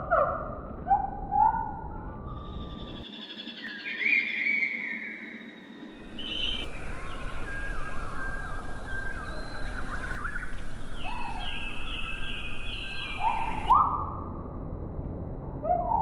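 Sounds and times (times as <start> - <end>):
lower upward-sliding bird calls: 0.9 - 13.8
birds whistling calls: 1.4 - 13.8
steady outdoor hiss: 2.4 - 13.7.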